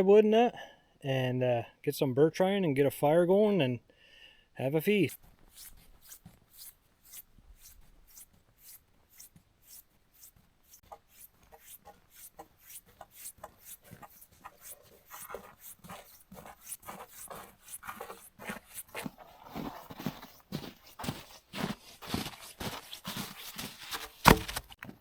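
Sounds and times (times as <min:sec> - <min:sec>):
footsteps crunching in snow: 0:05.0 - 0:24.8.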